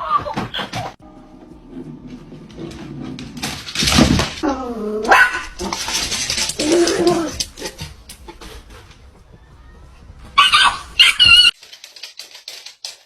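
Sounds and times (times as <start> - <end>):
dog barking: 5.1 - 5.6, 10.4 - 11.5.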